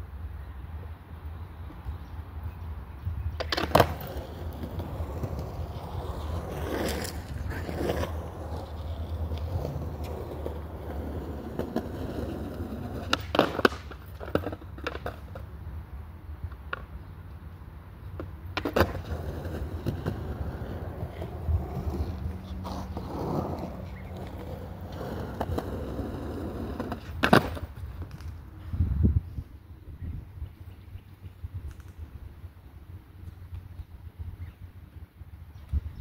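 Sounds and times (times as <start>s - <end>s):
skateboard wheels rolling: 1.2s - 30.0s
skateboard clacking on ground: 3.4s - 15.6s, 16.5s - 17.0s, 18.1s - 28.6s.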